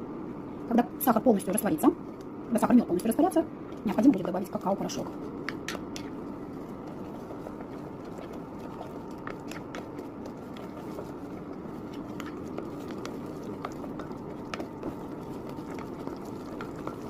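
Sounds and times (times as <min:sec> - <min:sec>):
spoon stirring in a pot: 0:03.7 - 0:17.0.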